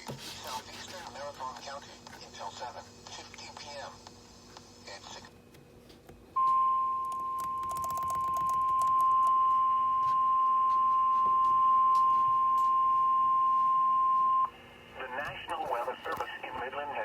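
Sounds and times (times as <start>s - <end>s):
radio static crackles: 0.4s - 5.4s, 14.9s - 17.0s
steady high-pitched alarm beep: 6.4s - 14.5s.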